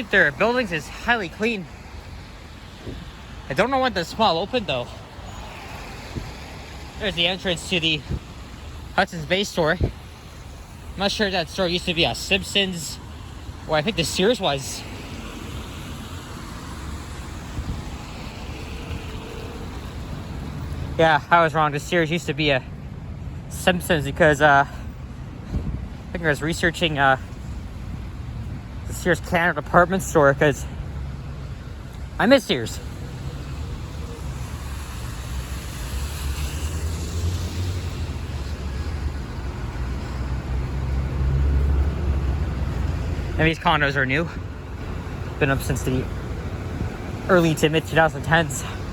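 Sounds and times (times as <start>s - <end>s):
tyres hissing on wet pavement: 0.0s - 22.3s, 23.6s - 48.9s
engines rumbling: 0.0s - 48.9s
tyre hiss on wet road: 0.1s - 8.8s, 32.9s - 43.2s.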